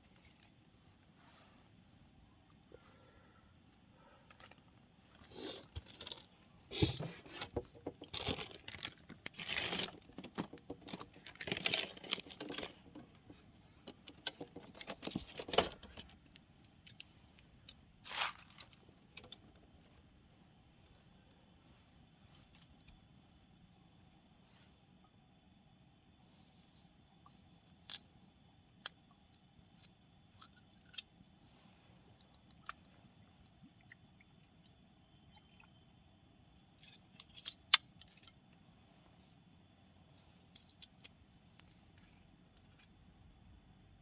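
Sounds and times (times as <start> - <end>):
handling rustles clinks and crinkles: 4.3 - 17.4.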